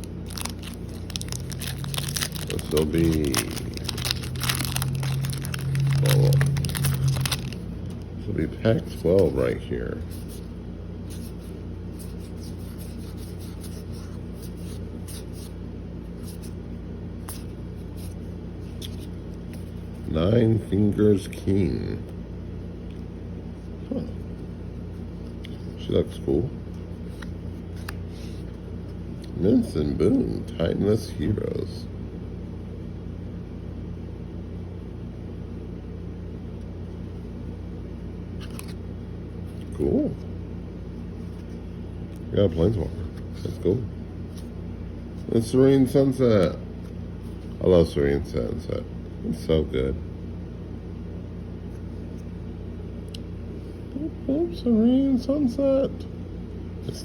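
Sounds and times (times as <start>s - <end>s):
cards rustling and ticking: 0.0s - 8.1s, 26.7s - 28.5s, 38.4s - 38.8s
low electrical hum: 0.0s - 57.0s.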